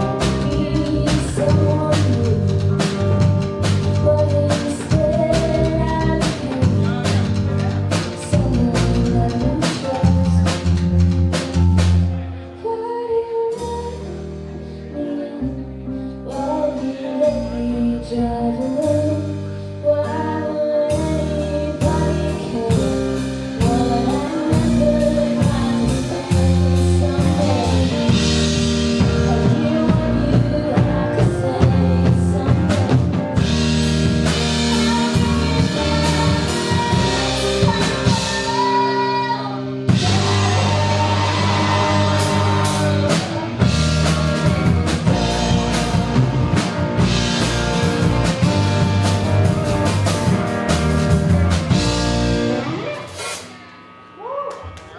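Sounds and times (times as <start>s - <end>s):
drum kit: 0.0s - 12.5s, 16.3s - 54.9s
person singing: 0.0s - 28.4s, 29.0s - 33.5s, 34.2s - 43.8s
bass guitar: 0.0s - 54.9s
electric guitar: 0.0s - 54.9s.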